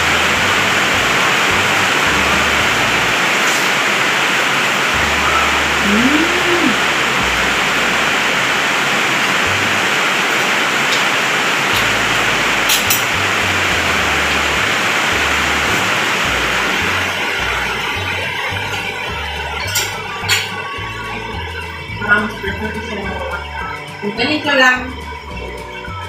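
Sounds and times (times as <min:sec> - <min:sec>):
heavy rain falling: 0:00.0 - 0:23.9.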